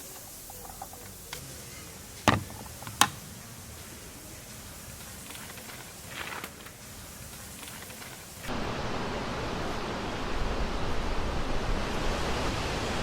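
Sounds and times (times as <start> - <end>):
background hiss: 0.0 - 10.9
sharp knocks: 2.3 - 3.2.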